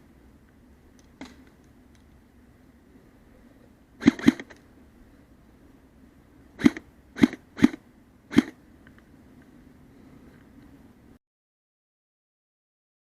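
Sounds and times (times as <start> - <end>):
airsoft gun shots: 4.0 - 4.6, 6.6 - 8.6.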